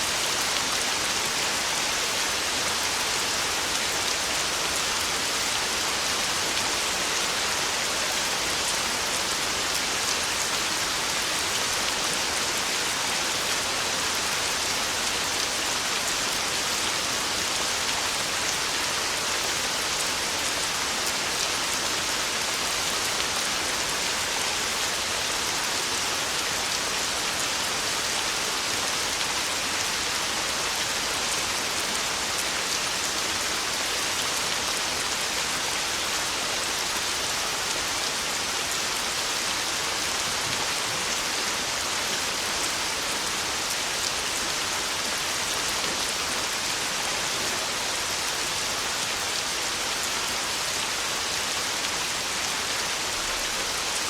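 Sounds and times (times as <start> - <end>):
heavy rain on a tin roof: 0.0 - 54.0.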